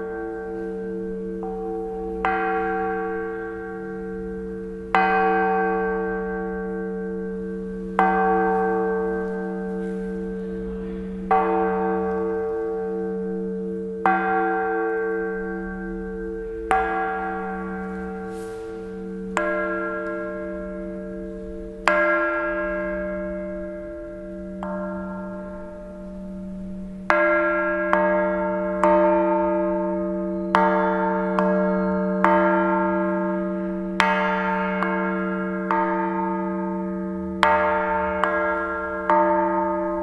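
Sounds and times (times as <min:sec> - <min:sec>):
church bell tolling: 0:00.0 - 0:40.0.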